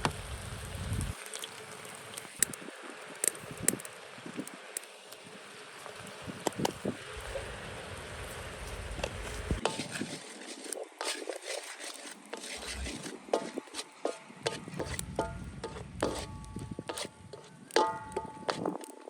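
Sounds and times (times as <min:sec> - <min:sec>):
food frying in a pan: 0:00.0 - 0:19.0
utensil clinking in pan: 0:14.5 - 0:19.0.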